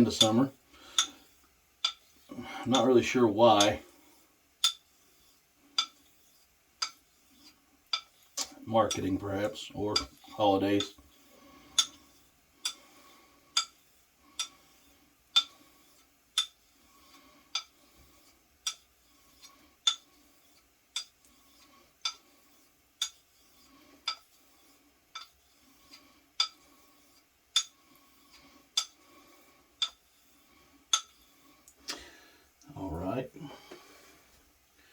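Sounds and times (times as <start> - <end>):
razor clicking on whetstone: 13.6 - 29.0.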